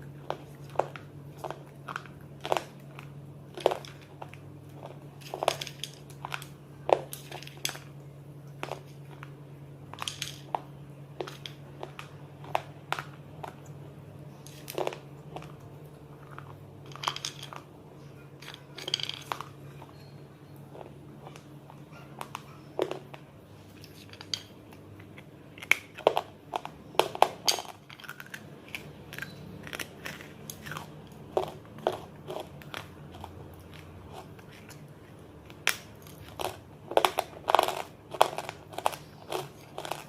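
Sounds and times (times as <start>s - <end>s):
crunchy biting and chewing: 0.0s - 7.9s, 10.0s - 24.1s, 25.5s - 40.0s.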